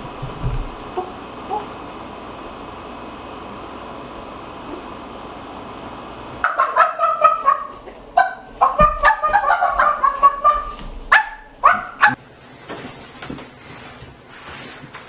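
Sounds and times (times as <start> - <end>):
person imitating chicken clucking: 6.4 - 12.1.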